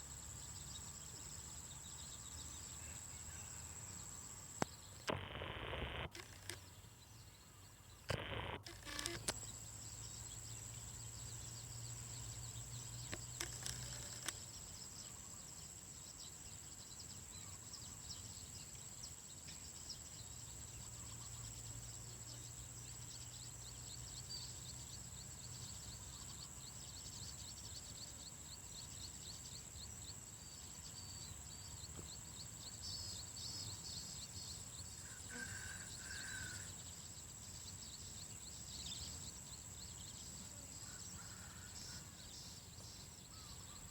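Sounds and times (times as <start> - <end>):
steady high-pitched buzz: 2.8 - 6.6, 8.1 - 14.4
short lower animal calls: 5.1 - 6.6, 8.1 - 9.3
rapid animal chirps: 5.1 - 6.7, 8.0 - 9.6, 13.1 - 14.5.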